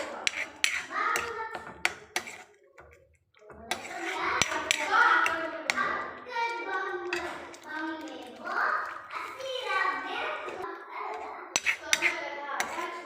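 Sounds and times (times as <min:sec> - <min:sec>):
person talking: 0:03.4 - 0:13.0.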